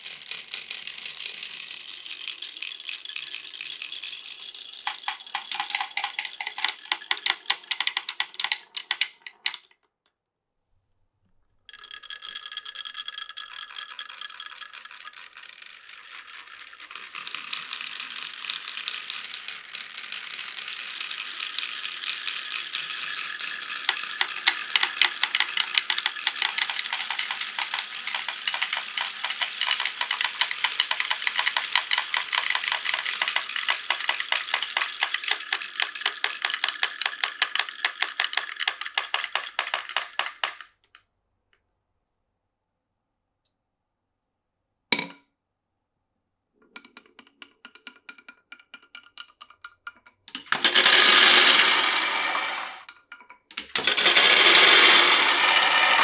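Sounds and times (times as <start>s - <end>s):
marbles rattling down wooden run: 0.0s - 9.6s, 11.7s - 40.7s, 50.3s - 52.9s, 53.5s - 56.0s.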